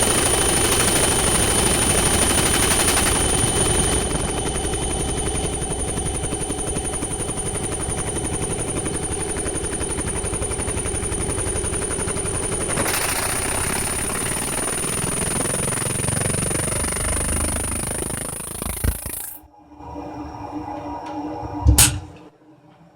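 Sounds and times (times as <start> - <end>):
laser printer chattering: 0.0 - 19.4.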